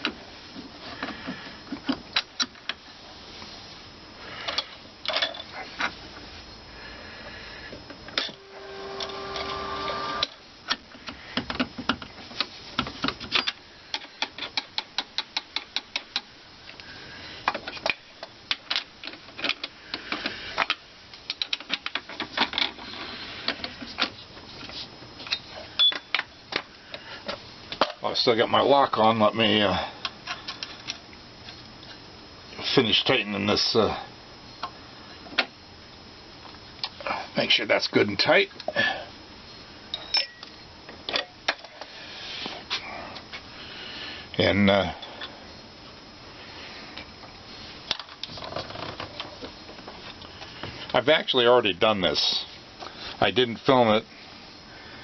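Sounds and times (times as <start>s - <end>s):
machine hum: 5.5s - 11.3s.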